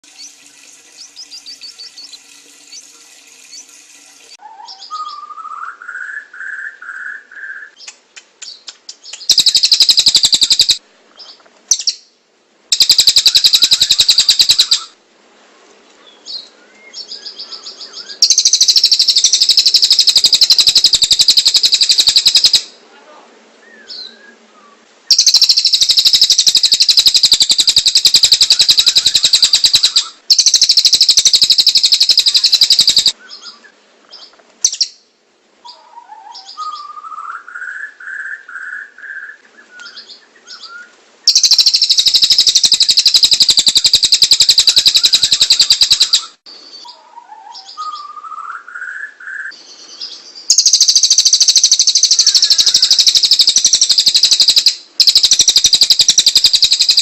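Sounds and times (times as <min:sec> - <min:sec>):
songbird singing high trills: 0:08.5 - 0:10.8, 0:12.7 - 0:15.0, 0:16.2 - 0:22.7, 0:23.6 - 0:33.7, 0:35.7 - 0:57.0.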